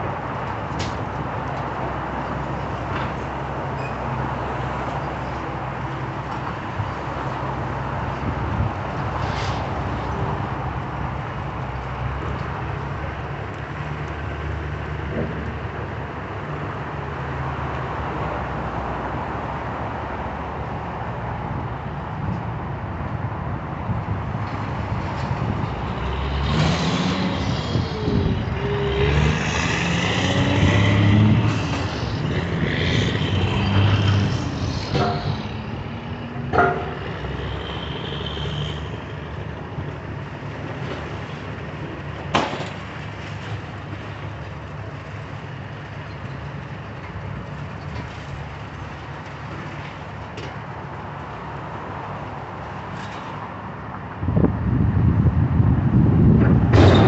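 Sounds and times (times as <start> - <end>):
diesel machinery running: 23.5 - 52.9.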